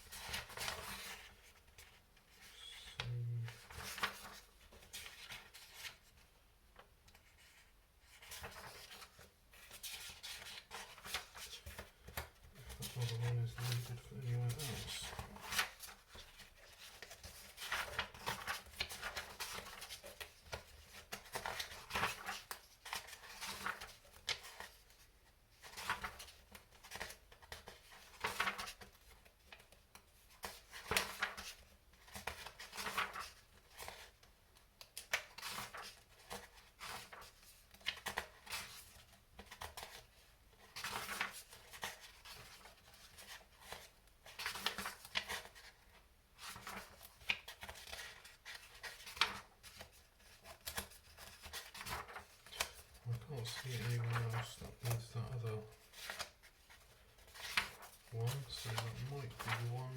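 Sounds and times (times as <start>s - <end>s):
paper and parts rustling: 7.2s - 25.0s, 34.9s - 59.9s.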